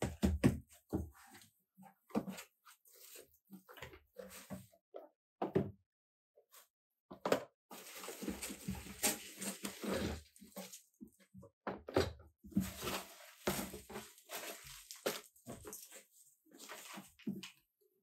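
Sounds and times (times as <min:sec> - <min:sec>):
objects being handled: 0:12.5 - 0:17.7.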